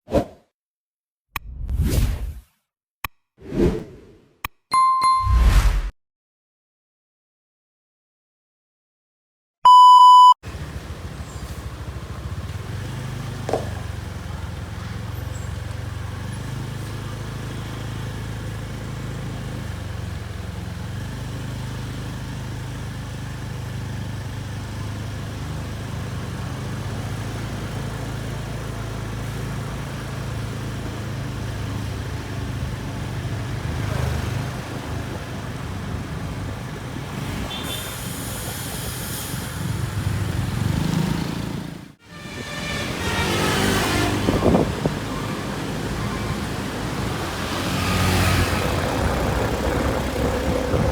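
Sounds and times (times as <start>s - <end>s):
traffic noise: 10.4s - 50.9s
vehicle engines running: 10.4s - 50.9s
vehicle passing: 39.5s - 50.9s.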